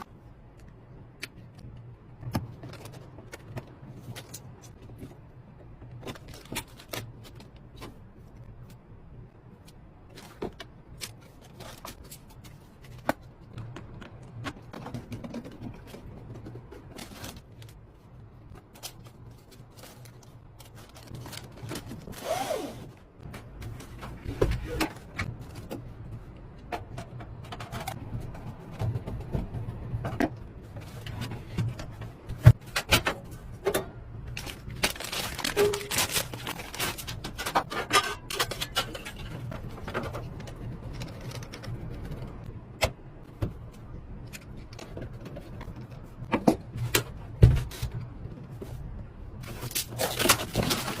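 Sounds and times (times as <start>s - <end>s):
packaging rustling: 34.3s - 37.7s.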